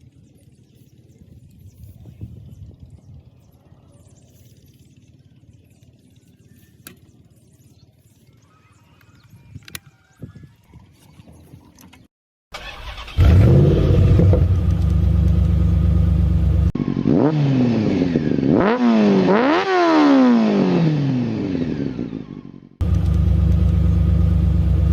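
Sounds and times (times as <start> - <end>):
car engine revving: 12.9 - 24.9.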